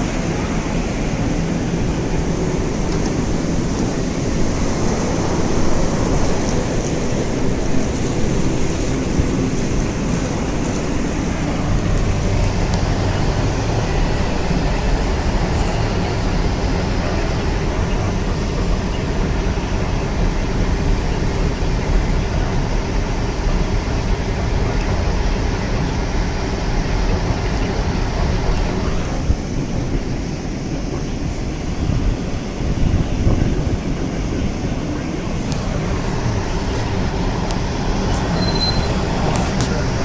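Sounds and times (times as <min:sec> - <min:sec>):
wind buffeting microphone: 0:00.0 - 0:40.0.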